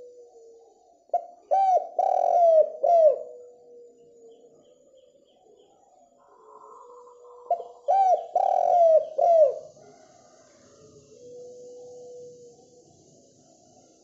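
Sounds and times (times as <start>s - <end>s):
dove cooing: 1.1s - 3.8s, 6.2s - 12.5s.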